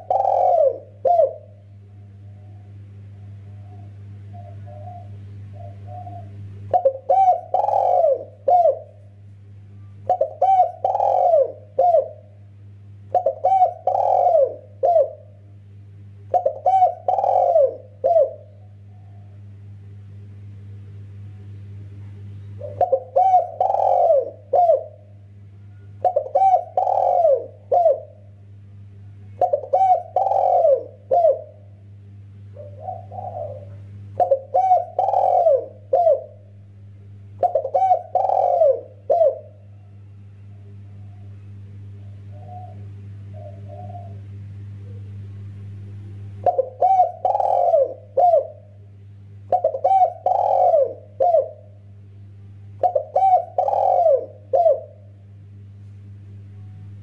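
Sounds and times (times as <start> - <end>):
dove cooing: 0.0 - 9.1, 10.0 - 12.4, 13.1 - 15.4, 16.3 - 19.5, 22.6 - 25.2, 26.0 - 28.3, 29.3 - 31.8, 32.5 - 36.5, 37.4 - 45.2, 46.4 - 48.9, 49.5 - 51.8, 52.8 - 55.1
steady low hum: 0.0 - 57.0.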